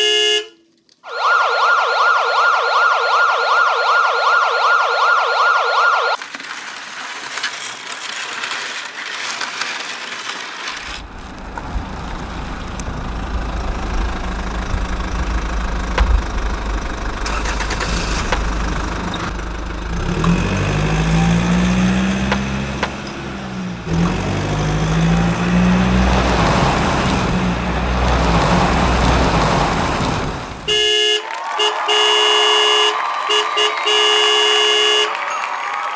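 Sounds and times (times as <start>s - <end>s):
engine rumble revving: 10.8s - 30.7s
short horn toots: 30.7s - 35.1s.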